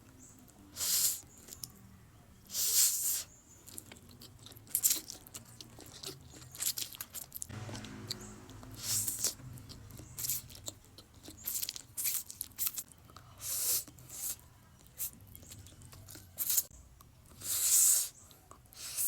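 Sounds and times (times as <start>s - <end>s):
eating noodles mouth sounds: 2.5s - 7.5s, 8.8s - 19.0s.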